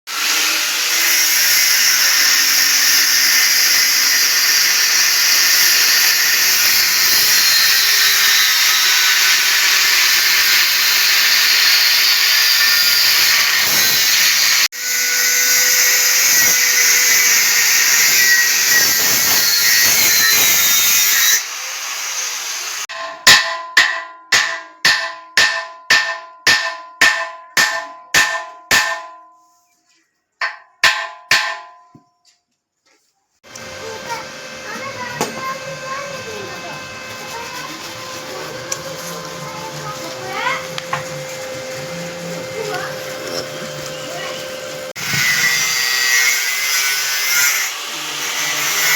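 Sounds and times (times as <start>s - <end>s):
power tool hissing on metal: 0.1s - 22.9s, 33.5s - 48.9s.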